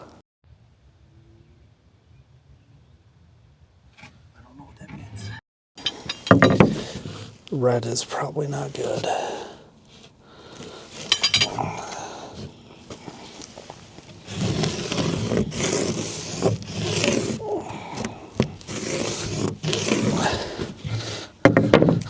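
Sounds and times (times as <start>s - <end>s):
clinks: 5.8s - 7.0s, 10.9s - 11.7s
scraping and knocking: 5.8s - 7.4s, 10.9s - 22.0s.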